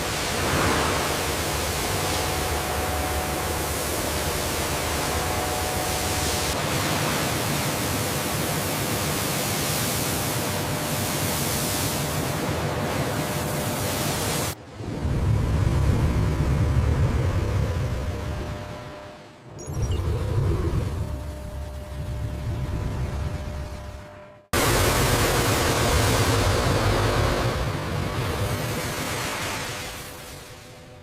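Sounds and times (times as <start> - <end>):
low rumble: 14.6 - 28.4.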